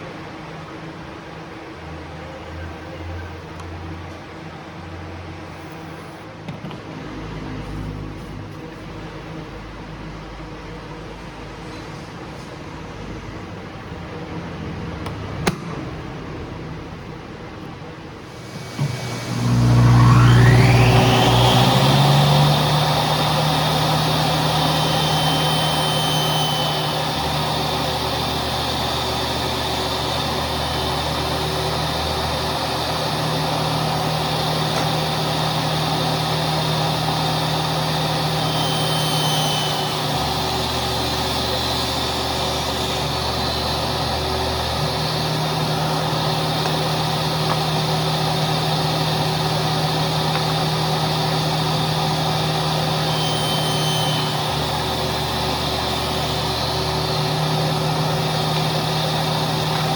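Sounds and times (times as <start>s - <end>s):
power tool motor whine: 18.2s - 59.9s.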